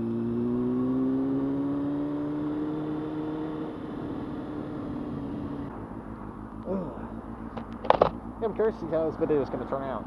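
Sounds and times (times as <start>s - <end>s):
motorcycle engine pulling: 6.5s - 10.0s.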